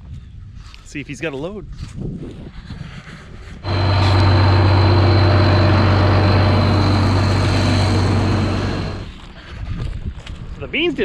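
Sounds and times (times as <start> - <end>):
diesel engine droning: 3.6 - 9.1
faint high whine: 3.6 - 9.1.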